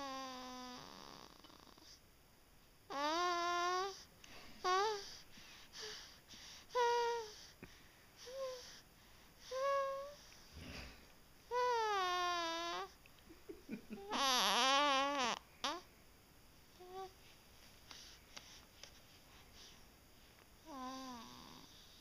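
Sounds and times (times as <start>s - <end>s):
person snoring squeakily: 0.0s - 2.0s, 2.9s - 4.0s, 11.5s - 12.9s, 14.0s - 15.8s, 20.7s - 22.0s
quiet breaths: 0.0s - 2.2s, 2.8s - 13.6s, 15.4s - 22.0s.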